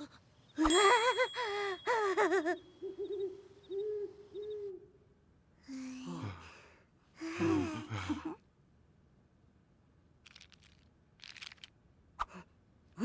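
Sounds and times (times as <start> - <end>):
wavering hoot-like tones: 1.8 - 5.1.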